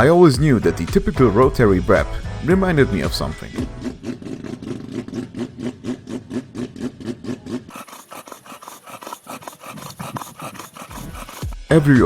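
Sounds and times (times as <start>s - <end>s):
raspy scratching with ticks: 2.9s - 12.0s
rotary engine idling: 3.2s - 11.6s.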